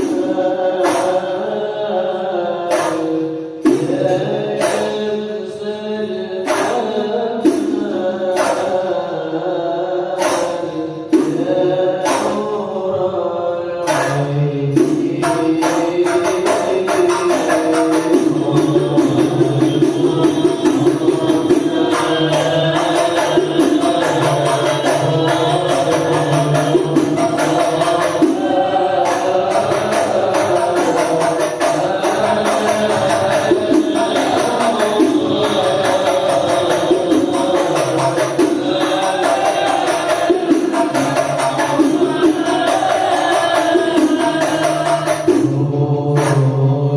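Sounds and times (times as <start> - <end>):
frame drums rhythm: 0.0 - 1.5, 2.7 - 5.2, 6.4 - 9.2, 10.1 - 12.7, 13.8 - 46.6
devotional singing: 0.0 - 46.9.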